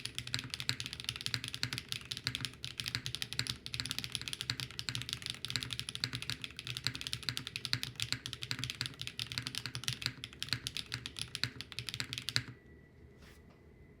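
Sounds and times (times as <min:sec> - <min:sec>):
mechanical keyboard typing: 0:00.0 - 0:12.6
faint steady hum: 0:00.0 - 0:14.0.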